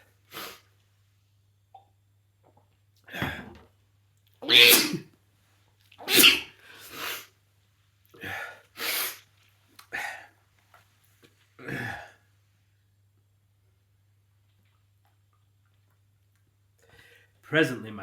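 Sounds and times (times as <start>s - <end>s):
person sneezing: 4.4s - 5.1s, 6.0s - 7.3s.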